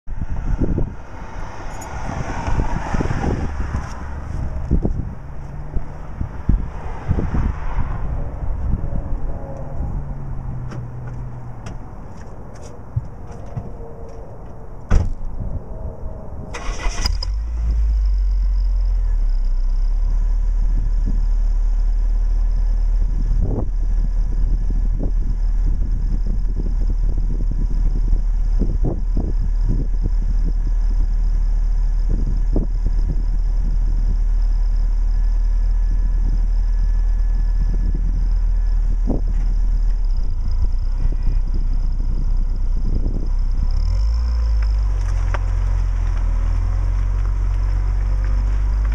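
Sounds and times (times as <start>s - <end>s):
car engine cranking and idling: 0.0s - 48.9s
exhaust turbo whistle: 40.2s - 43.2s.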